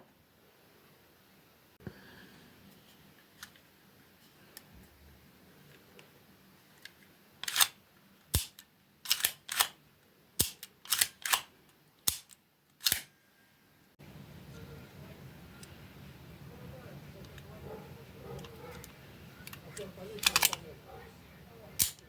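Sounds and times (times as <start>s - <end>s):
film camera mechanical clicks: 7.4s - 9.8s, 10.4s - 11.5s, 12.1s - 13.1s, 18.4s - 20.6s, 21.8s - 22.0s.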